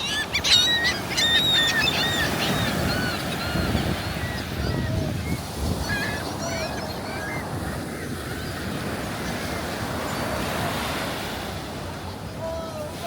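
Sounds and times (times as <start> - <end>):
wind rumbling on microphone: 2.7 - 9.2.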